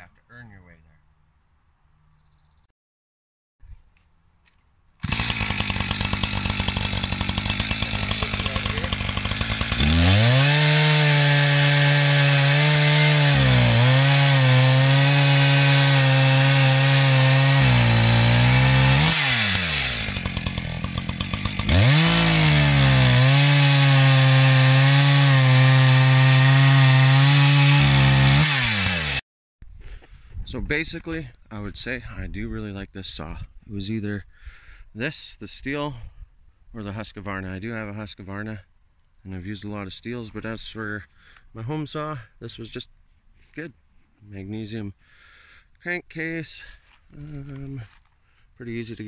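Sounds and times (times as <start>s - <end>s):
chainsaw idling and revving: 5.0s - 29.2s.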